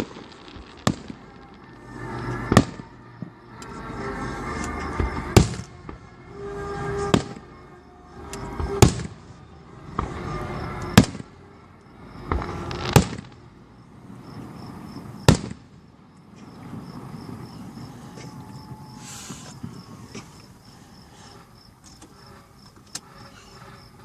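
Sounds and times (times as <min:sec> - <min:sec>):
fireworks shells booming: 0:00.0 - 0:03.4, 0:04.8 - 0:06.0, 0:08.4 - 0:09.3, 0:12.2 - 0:13.5, 0:14.9 - 0:24.0
fireworks rumble and crackle: 0:00.0 - 0:24.0.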